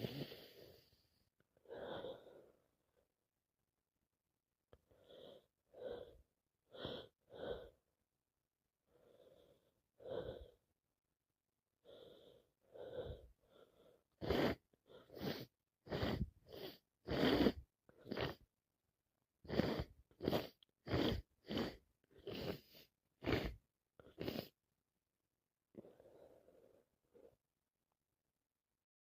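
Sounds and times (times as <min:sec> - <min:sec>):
soft breaths: 0:00.0 - 0:03.0, 0:11.8 - 0:18.4, 0:19.5 - 0:24.6.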